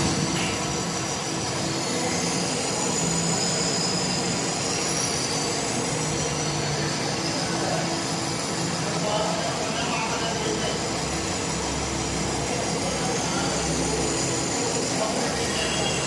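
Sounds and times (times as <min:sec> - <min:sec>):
lathe running: 0:00.0 - 0:16.0
thin high whine: 0:00.0 - 0:16.0.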